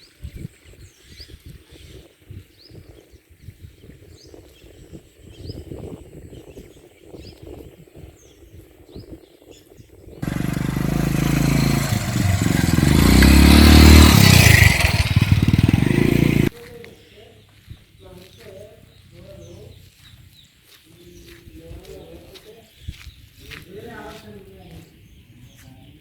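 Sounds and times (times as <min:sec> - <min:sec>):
small birds chirping: 0:00.0 - 0:26.0
loud motor engine running: 0:10.2 - 0:16.5.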